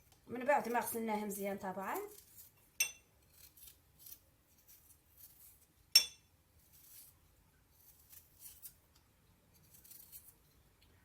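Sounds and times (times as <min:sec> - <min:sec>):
ginger root scraping: 0:00.4 - 0:05.7, 0:06.6 - 0:08.8, 0:09.5 - 0:10.6.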